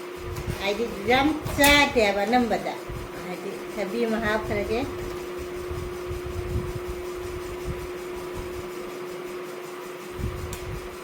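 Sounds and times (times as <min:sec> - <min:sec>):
electrical fan hum: 0:00.0 - 0:11.0
soft low thumps: 0:00.2 - 0:08.7.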